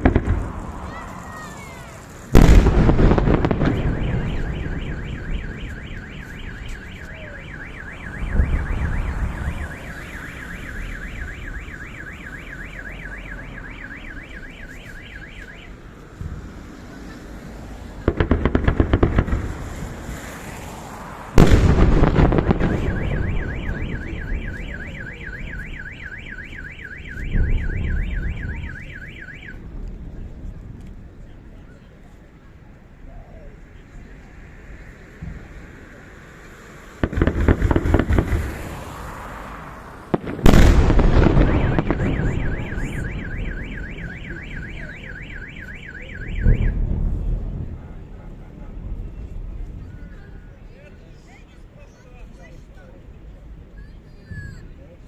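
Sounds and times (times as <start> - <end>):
fireworks bangs: 0.0 - 31.6, 35.1 - 50.4
fireworks crackling: 0.0 - 52.7
car alarm two-tone chirp: 3.6 - 15.8, 22.2 - 29.6, 40.5 - 46.9.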